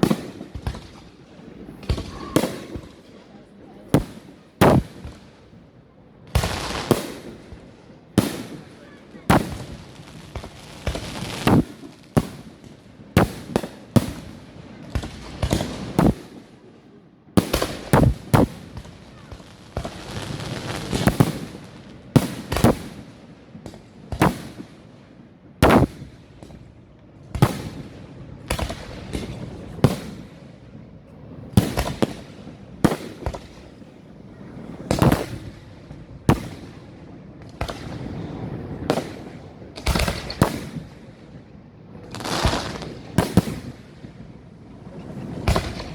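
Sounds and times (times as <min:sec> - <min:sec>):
fireworks bangs: 0:00.0 - 0:05.6, 0:06.2 - 0:16.4, 0:17.4 - 0:24.9, 0:25.6 - 0:26.6, 0:27.3 - 0:45.9
fireworks crackle and hiss: 0:00.0 - 0:16.7, 0:17.4 - 0:45.9.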